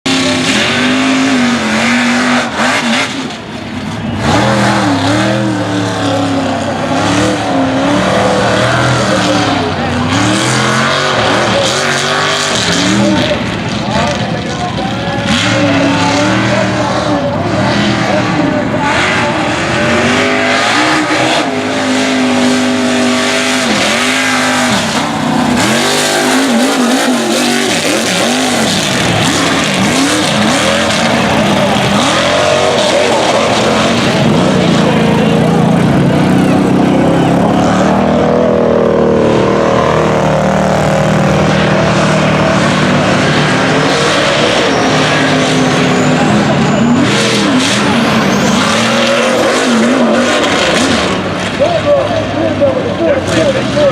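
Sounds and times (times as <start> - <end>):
truck engine revving: 0.0 - 53.9.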